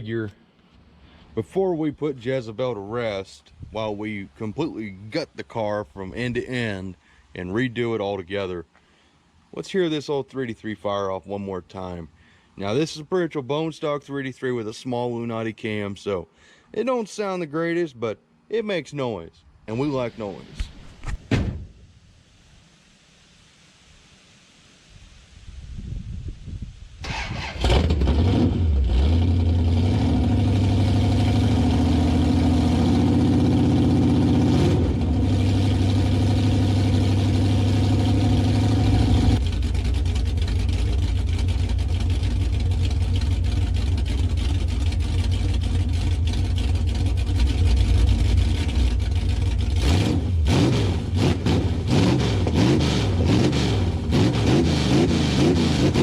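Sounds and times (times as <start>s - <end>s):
open-exhaust engine idling and revving: 27.0s - 56.0s.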